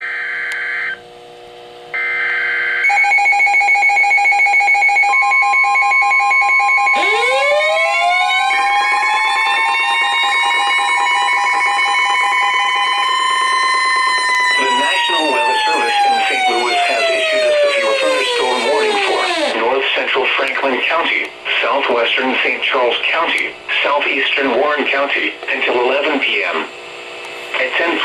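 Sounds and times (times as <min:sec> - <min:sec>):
siren sweeping up: 0:02.8 - 0:19.7.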